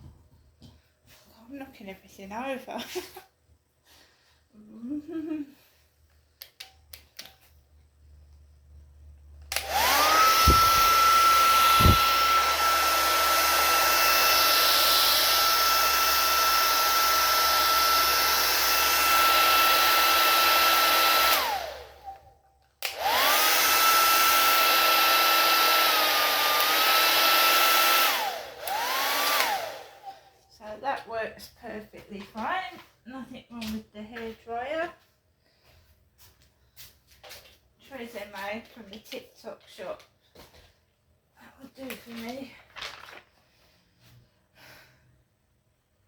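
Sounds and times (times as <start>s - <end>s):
hairdryer motor whine: 9.4s - 30.4s.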